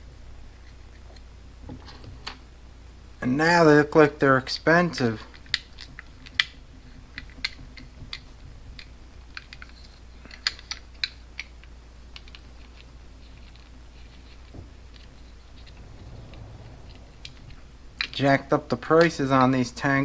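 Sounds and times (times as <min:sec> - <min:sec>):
low steady hum: 0:15.2 - 0:18.8.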